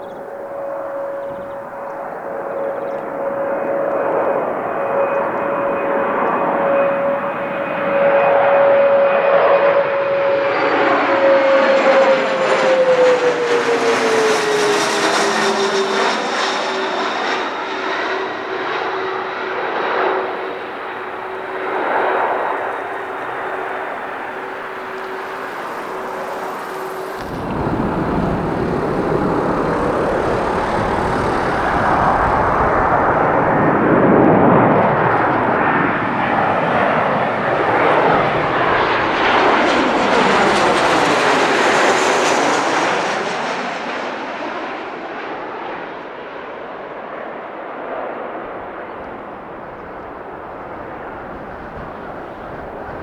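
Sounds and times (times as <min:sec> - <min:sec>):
airliner engine noise passing: 0:00.0 - 0:53.0
wind rumble on microphone: 0:20.2 - 0:38.8, 0:49.0 - 0:53.0.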